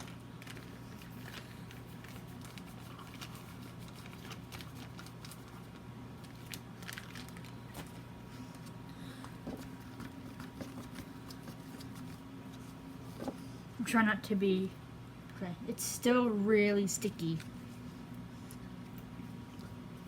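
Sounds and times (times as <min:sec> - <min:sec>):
slime squishing and crackling: 0:00.0 - 0:08.0.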